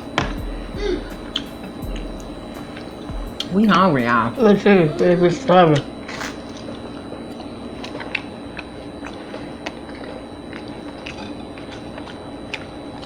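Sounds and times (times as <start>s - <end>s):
low room hum: 0.0s - 13.0s
person chewing food: 5.8s - 13.0s.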